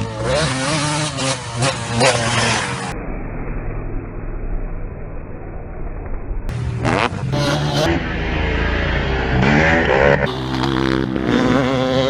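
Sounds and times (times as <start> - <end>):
motocross engine revving: 0.0 - 3.0, 6.5 - 12.0
dull low drone: 2.7 - 11.3.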